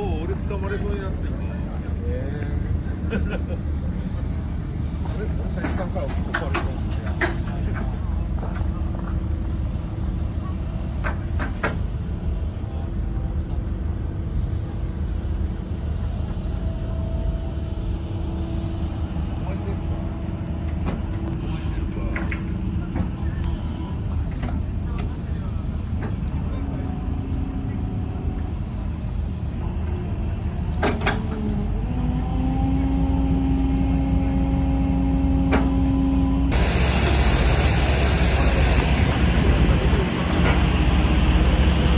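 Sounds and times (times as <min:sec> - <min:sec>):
heavy machine engine rumbling: 0:00.0 - 0:41.9
steady whine: 0:00.0 - 0:41.9
loud hiss: 0:36.5 - 0:41.9.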